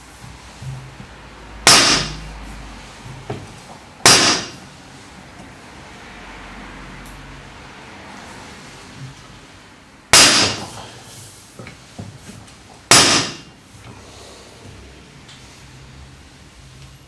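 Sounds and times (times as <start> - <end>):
sharp metallic bangs: 1.6 - 2.4, 4.0 - 4.8, 10.1 - 10.8, 12.9 - 13.6.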